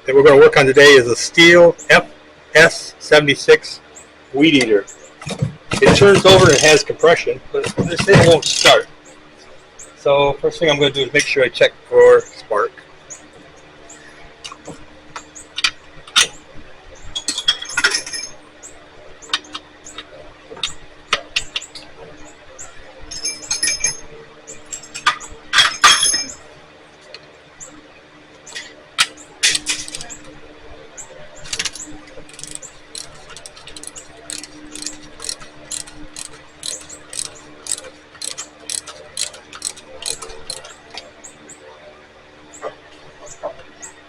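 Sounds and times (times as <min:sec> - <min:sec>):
hand tools clicking on engine: 0:04.6 - 0:06.8, 0:07.6 - 0:08.8, 0:29.0 - 0:30.2, 0:31.5 - 0:41.1.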